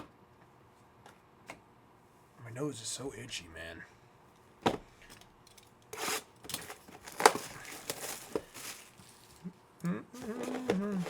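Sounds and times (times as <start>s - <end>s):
plastic packaging tearing and crinkling: 5.9s - 9.5s, 10.2s - 11.0s.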